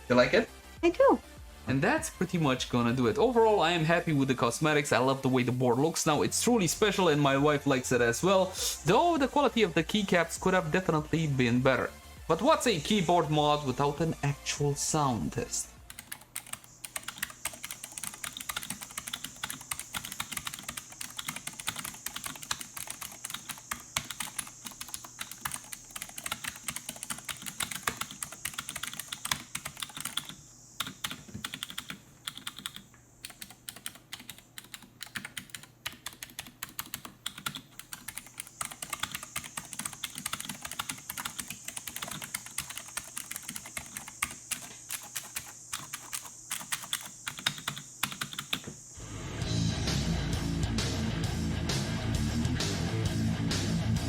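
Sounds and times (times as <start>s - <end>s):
fast keyboard typing clicks: 15.9s - 48.6s.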